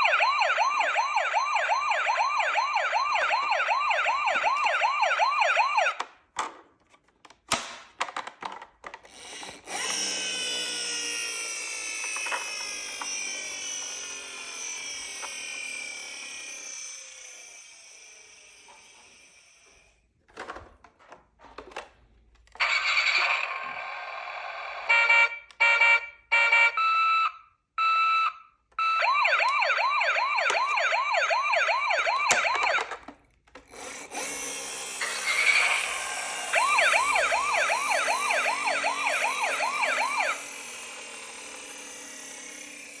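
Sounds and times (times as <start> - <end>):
toy siren yelping: 0.0 - 6.0, 9.7 - 17.7, 22.6 - 33.0, 35.0 - 43.0.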